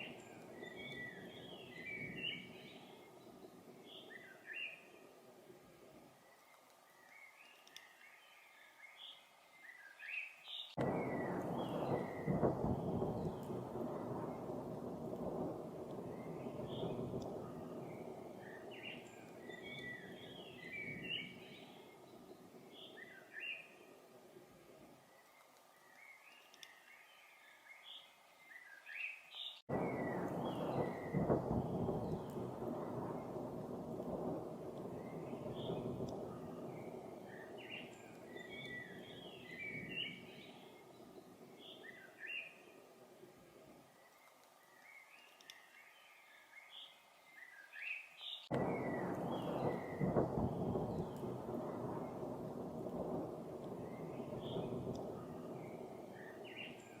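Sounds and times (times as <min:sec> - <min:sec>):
low rumble of thunder: 0:00.0 - 0:04.6, 0:10.8 - 0:23.4, 0:29.7 - 0:43.9, 0:48.5 - 0:57.0
songbird chirping: 0:00.0 - 0:57.0.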